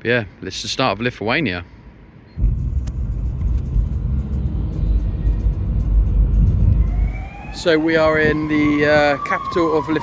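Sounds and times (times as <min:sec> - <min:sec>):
low rumble of road traffic: 0:00.0 - 0:10.0.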